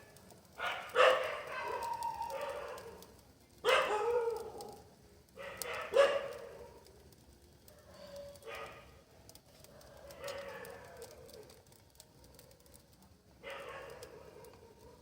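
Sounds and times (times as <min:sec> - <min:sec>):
faint clicks: 0:00.0 - 0:15.0.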